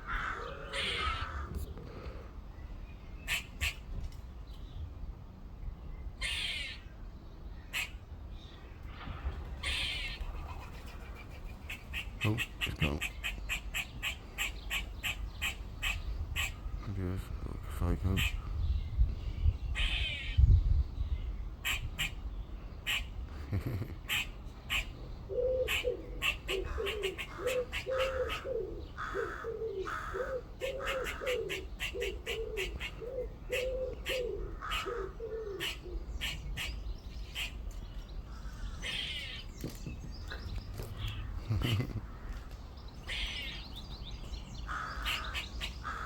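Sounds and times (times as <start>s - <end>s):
squirrel alarm barks: 11.7s - 16.7s, 25.7s - 37.6s.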